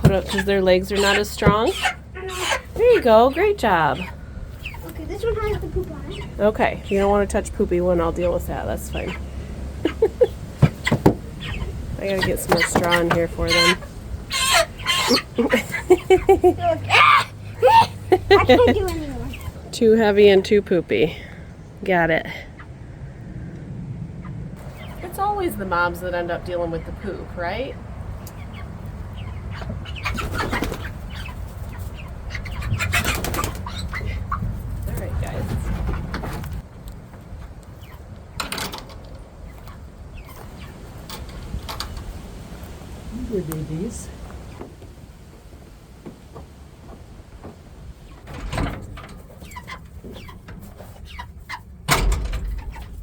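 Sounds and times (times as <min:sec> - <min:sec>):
chicks peeping: 0:00.0 - 0:19.6, 0:24.6 - 0:25.4, 0:26.4 - 0:38.3, 0:39.4 - 0:44.6, 0:49.2 - 0:51.7
low steady rumble: 0:00.0 - 0:30.1
chickens flapping wings: 0:30.0 - 0:36.6.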